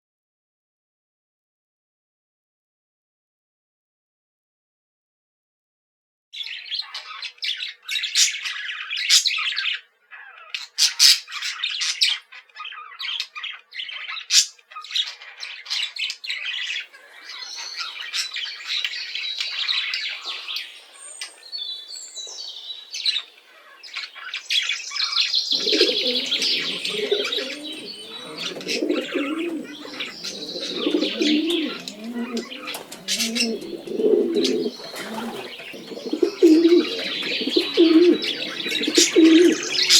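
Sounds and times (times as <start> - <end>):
cage birds chirping: 6.4 - 39.9
pigeons cooing: 25.2 - 39.9.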